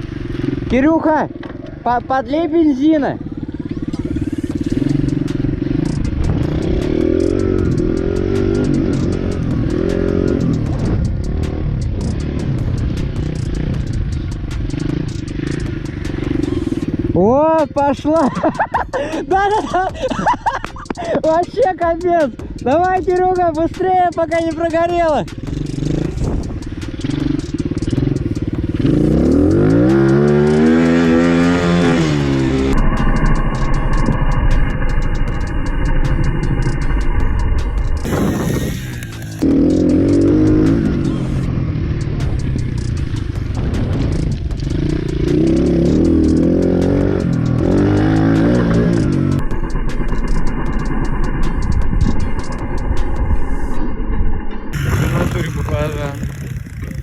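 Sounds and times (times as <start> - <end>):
pit bike engine revving: 0.0 - 21.4, 22.8 - 52.6, 54.8 - 57.0
sharp clicks: 3.9 - 16.1, 20.6 - 21.0, 44.1 - 49.5.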